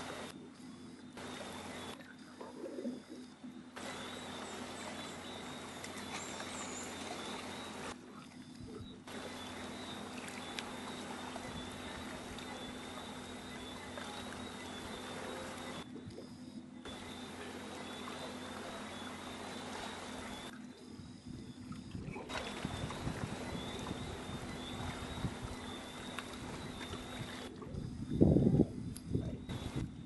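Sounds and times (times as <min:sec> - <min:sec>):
outdoor hiss: 0:00.0 - 0:00.4, 0:03.8 - 0:08.0, 0:16.9 - 0:20.5, 0:29.5 - 0:29.9
high-pitched whine: 0:00.0 - 0:30.0
birds chirping: 0:02.6 - 0:08.0, 0:08.8 - 0:15.8, 0:16.4 - 0:20.9, 0:22.3 - 0:27.5.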